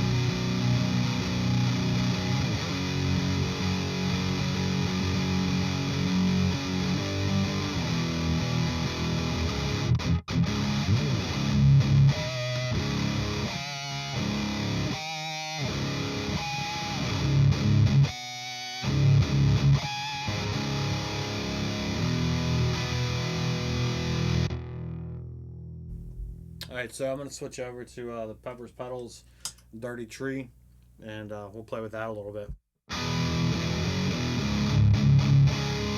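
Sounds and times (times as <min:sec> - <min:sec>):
distorted electric guitar riffing: 0:00.0 - 0:25.2, 0:32.9 - 0:35.9.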